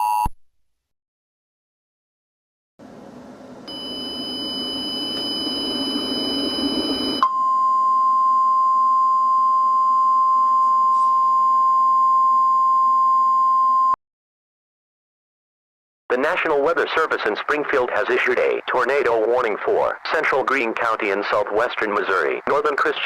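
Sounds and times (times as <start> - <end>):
steady high-pitched tones: 3.6 - 7.3.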